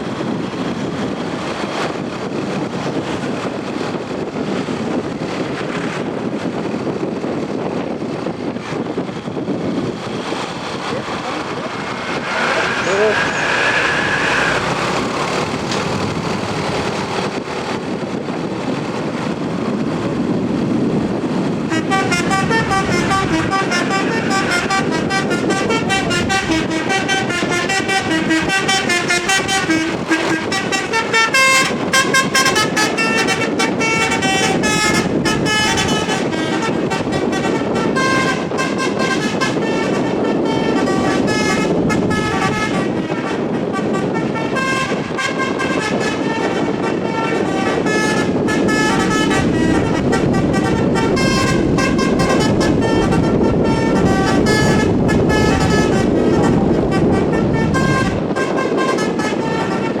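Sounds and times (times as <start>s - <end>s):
bus engine running: 0.0s - 60.0s
road traffic: 0.0s - 60.0s
musical air horn melody: 21.7s - 60.0s.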